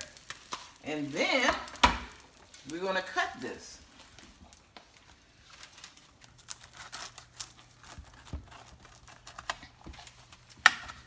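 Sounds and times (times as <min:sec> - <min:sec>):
knife cutting crisp tortilla: 0:05.6 - 0:11.0.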